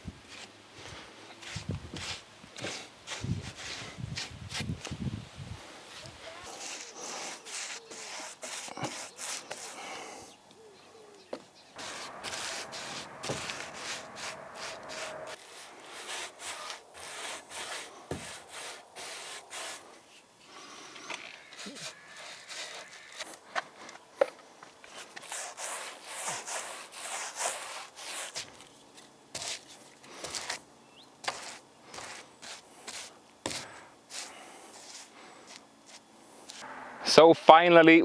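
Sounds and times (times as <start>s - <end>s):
paintbrush scratchy strokes: 5.9s - 10.1s, 11.8s - 20.1s, 21.4s - 23.4s, 24.9s - 28.6s, 31.2s - 37.1s.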